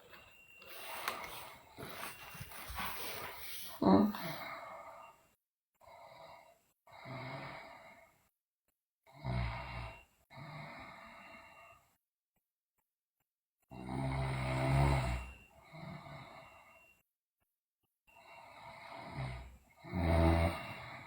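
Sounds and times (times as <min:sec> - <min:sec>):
girl breathing heavily in sleep: 0:00.0 - 0:05.2
low snoring rasp: 0:00.6 - 0:04.6, 0:05.9 - 0:08.1, 0:13.8 - 0:16.7, 0:18.3 - 0:21.0.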